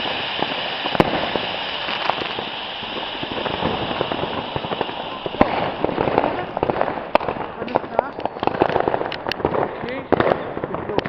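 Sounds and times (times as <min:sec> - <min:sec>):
firework bang: 0:00.0 - 0:11.0
firework fountains hissing and crackling: 0:00.0 - 0:11.0.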